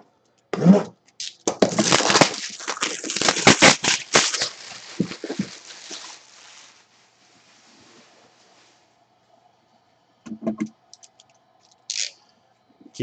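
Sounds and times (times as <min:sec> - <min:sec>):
packaging tearing and crinkling: 0:01.2 - 0:06.8, 0:11.9 - 0:12.1.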